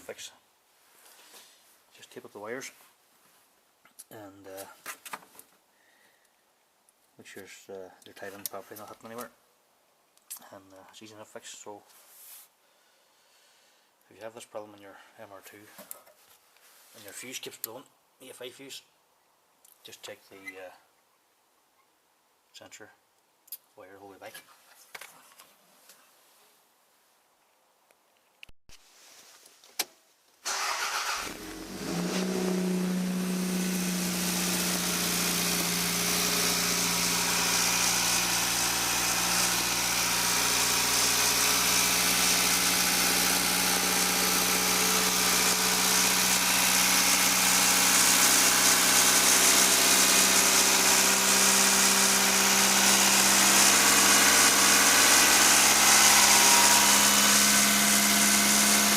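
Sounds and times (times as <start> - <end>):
car engine starting and idling: 30.5 - 40.4.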